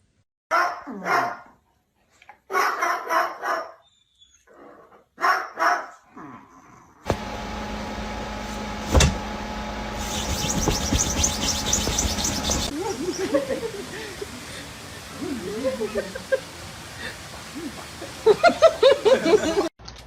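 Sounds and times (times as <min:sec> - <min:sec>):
low hum: 0:07.1 - 0:15.1
pet animal calling: 0:10.0 - 0:13.2.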